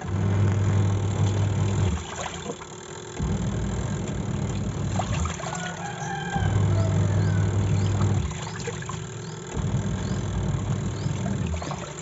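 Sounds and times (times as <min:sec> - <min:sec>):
washing machine motor humming: 0:00.0 - 0:12.0.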